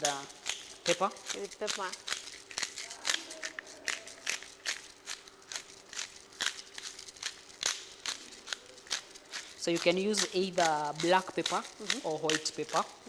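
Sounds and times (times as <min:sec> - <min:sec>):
crunchy clicks and crackles: 0:00.0 - 0:13.0.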